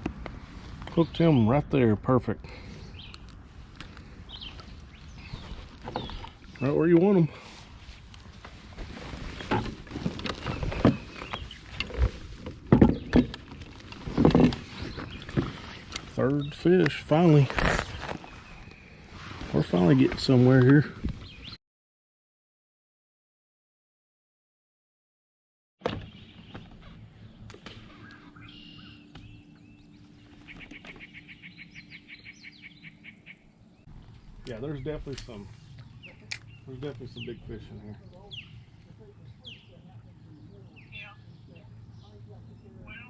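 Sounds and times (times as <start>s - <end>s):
songbirds chirping: 0.2s - 21.6s, 25.8s - 43.0s
knocks and clicks in kayak: 5.3s - 7.0s, 9.4s - 16.2s.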